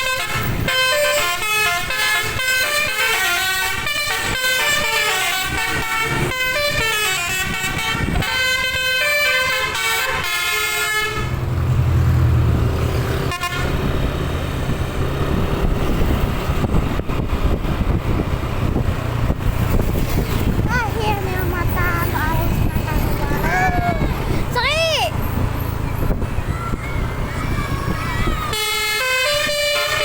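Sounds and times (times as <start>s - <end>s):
musical air horn melody: 0.0s - 11.4s, 13.2s - 13.9s, 28.5s - 30.0s
bus engine drone: 0.0s - 30.0s.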